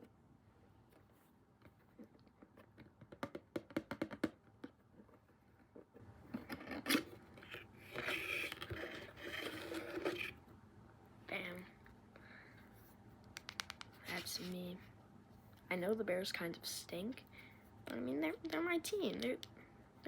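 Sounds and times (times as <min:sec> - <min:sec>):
cardboard and plastic scraping: 0:05.1 - 0:10.4.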